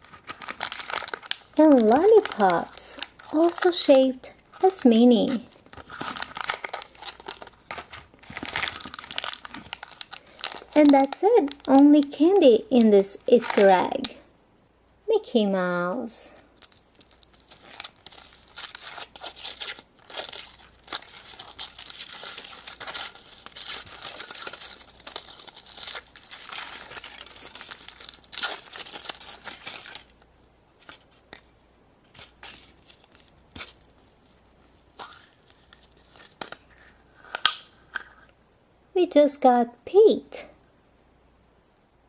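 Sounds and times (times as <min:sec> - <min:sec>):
crinkly wrapper tearing and crumpling: 0:00.0 - 0:14.2, 0:16.5 - 0:30.2, 0:32.1 - 0:38.2.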